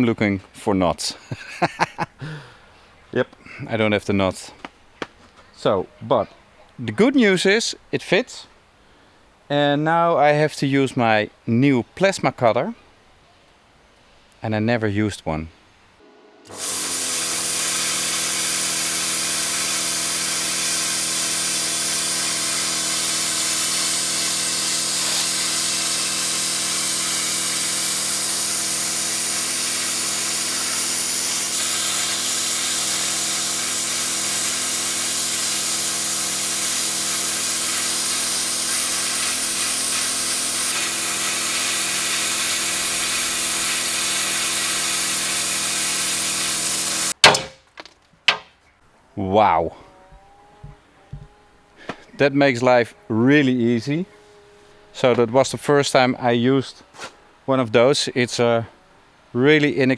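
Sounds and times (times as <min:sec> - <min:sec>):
plasma cutter hissing and buzzing: 0:16.5 - 0:47.1.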